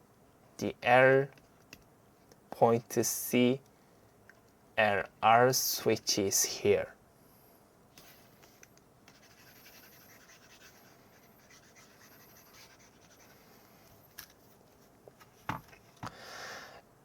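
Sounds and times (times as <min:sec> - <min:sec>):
low hiss: 0:00.0 - 0:17.0
faint scratching: 0:08.0 - 0:14.9.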